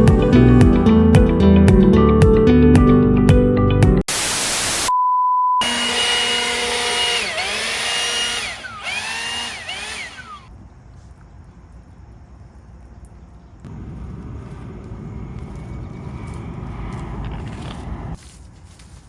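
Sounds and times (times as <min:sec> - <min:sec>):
hiss burst: 0:04.1 - 0:04.9
power tool motor whine: 0:05.6 - 0:10.5.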